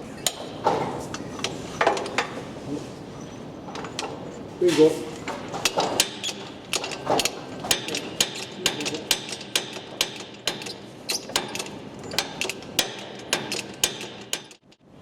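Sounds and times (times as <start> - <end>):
ratchet spanner clicking: 5.6 - 14.7.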